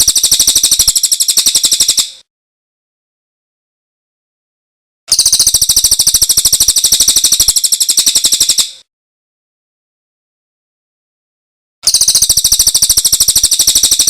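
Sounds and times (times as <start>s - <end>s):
songbird high-pitched trill: 0.0s - 2.2s, 5.1s - 8.8s, 11.8s - 14.0s.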